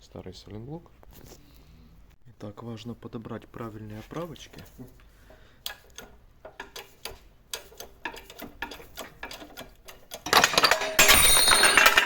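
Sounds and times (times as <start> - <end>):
metal clicks and clinks: 7.6 - 12.0.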